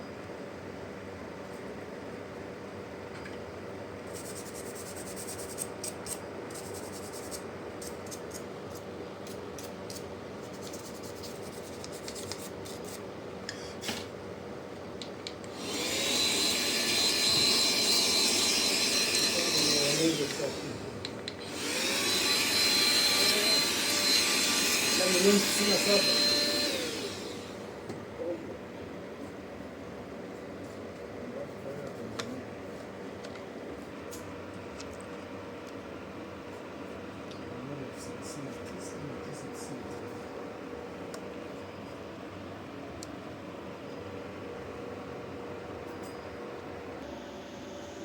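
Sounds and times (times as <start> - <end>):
electric power tool whining: 15.5 - 27.7.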